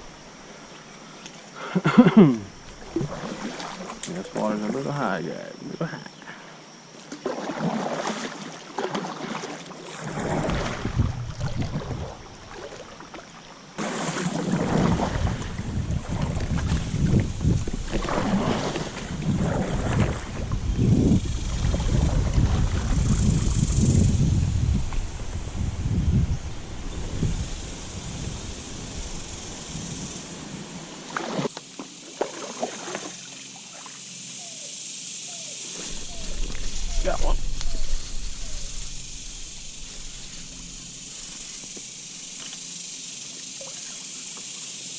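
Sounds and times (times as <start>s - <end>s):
river water rushing and splashing: 2.5s - 5.1s, 7.0s - 23.1s, 35.7s - 44.2s
wind buffeting microphone: 10.2s - 12.4s, 14.5s - 30.6s, 35.8s - 41.8s.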